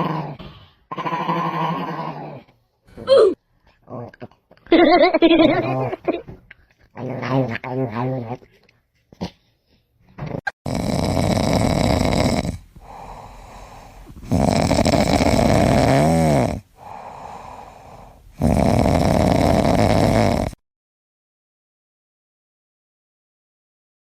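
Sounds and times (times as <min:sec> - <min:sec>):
pet snoring loudly: 0:00.0 - 0:02.5, 0:10.2 - 0:20.6
quiet breaths: 0:10.8 - 0:20.6.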